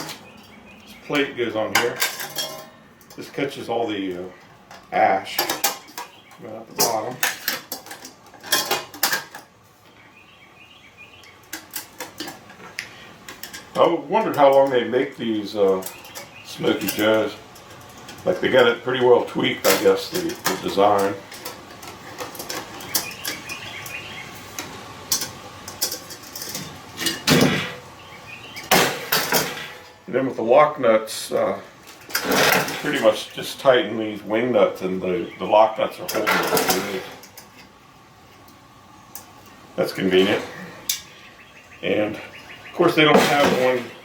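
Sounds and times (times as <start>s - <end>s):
metal grill parts tapping: 0.0s - 10.0s, 11.2s - 27.8s, 28.6s - 30.1s, 31.3s - 37.8s, 38.4s - 41.2s, 42.1s - 44.0s
metal plate clinking and rattling: 1.7s - 3.3s, 6.8s - 9.4s
metal clatter: 1.7s - 3.4s, 4.7s - 9.5s, 13.3s - 14.8s, 25.1s - 27.8s, 28.6s - 30.0s, 31.9s - 33.2s, 36.1s - 37.7s.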